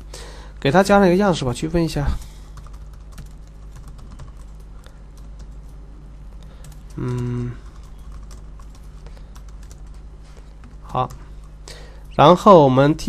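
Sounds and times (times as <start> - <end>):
low electrical hum: 0.0 - 13.0
person humming: 6.9 - 7.7.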